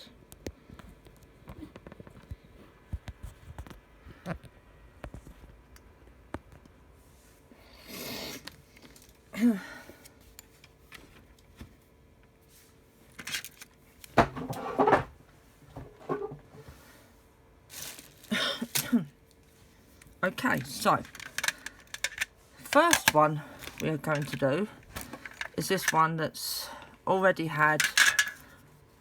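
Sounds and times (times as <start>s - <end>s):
small objects knocking and rattling: 20.4s - 26.0s, 27.8s - 28.4s.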